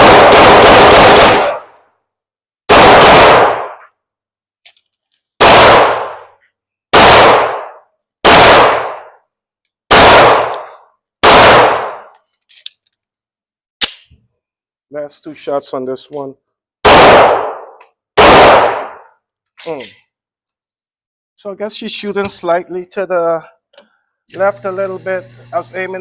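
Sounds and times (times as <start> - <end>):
pistol shots: 0.0 - 1.7, 2.7 - 3.9, 5.4 - 9.2, 9.9 - 12.1, 16.8 - 19.2.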